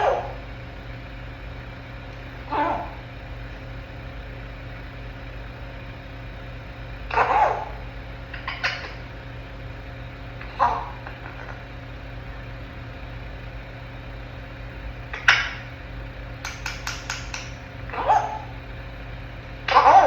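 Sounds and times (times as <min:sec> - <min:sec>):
parrot calls: 0:00.0 - 0:00.7, 0:02.2 - 0:03.3, 0:07.0 - 0:09.2, 0:10.3 - 0:11.7, 0:15.1 - 0:15.8, 0:16.5 - 0:18.6, 0:19.6 - 0:20.0
steady low hum: 0:00.0 - 0:20.0
parrot clicks: 0:15.1 - 0:15.7, 0:16.4 - 0:18.0.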